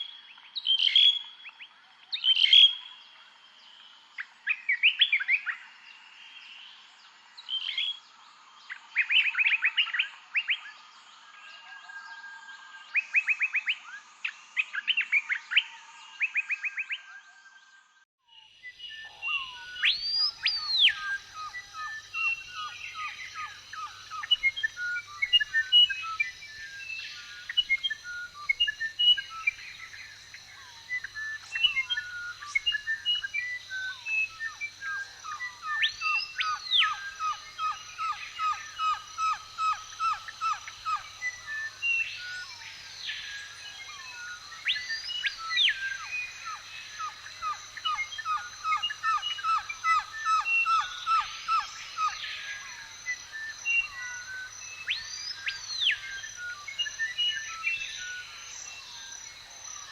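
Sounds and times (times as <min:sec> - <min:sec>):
bird chirps: 0:18.4 - 0:59.9.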